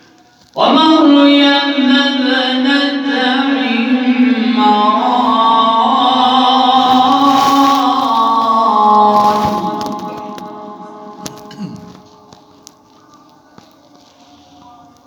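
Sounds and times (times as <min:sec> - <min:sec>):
man reciting melodically: 0:00.6 - 0:06.8.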